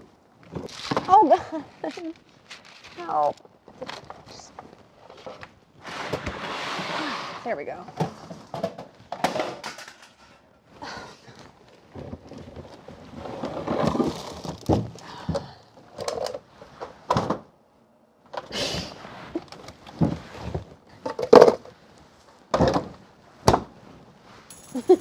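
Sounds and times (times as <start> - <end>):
rustling and scraping: 0.4 - 10.5, 11.3 - 15.0, 18.8 - 25.0.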